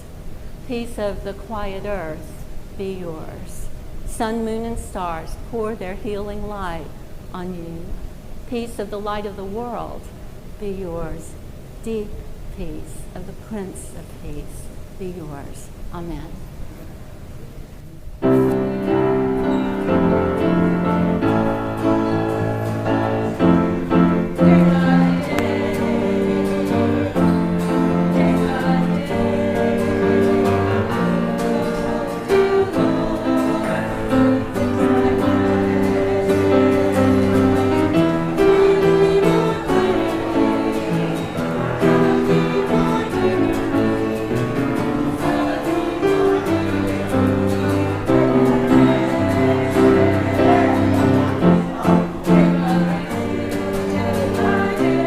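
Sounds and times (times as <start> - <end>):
instrumental accompaniment: 18.2 - 55.0
choir singing: 18.4 - 55.0.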